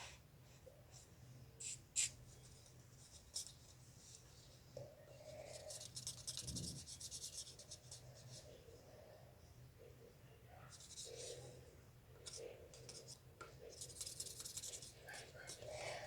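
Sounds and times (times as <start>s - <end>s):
light tapping and scratching: 12.2s - 16.0s.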